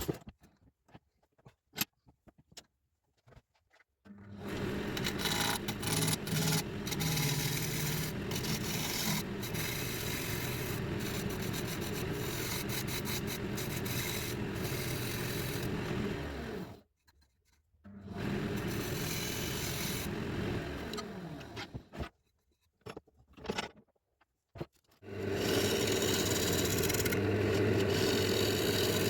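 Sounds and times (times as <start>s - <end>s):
lathe tool scraping wood: 4.4s - 16.8s, 18.1s - 21.8s, 25.0s - 29.0s.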